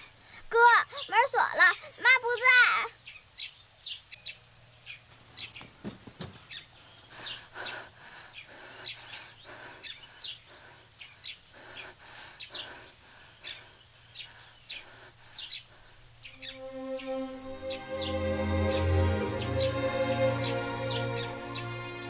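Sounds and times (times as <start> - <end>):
small birds chirping: 0.0 - 22.0
soft music: 16.2 - 22.0.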